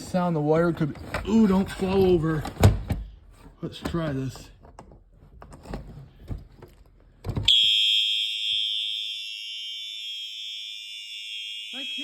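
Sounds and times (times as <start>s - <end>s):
fire alarm horn tone: 7.5s - 12.0s.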